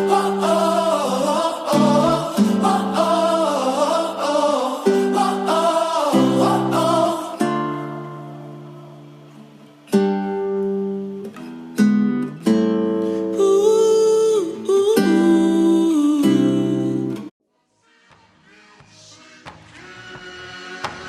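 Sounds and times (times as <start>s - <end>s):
strummed acoustic guitar chords: 0.0s - 15.6s.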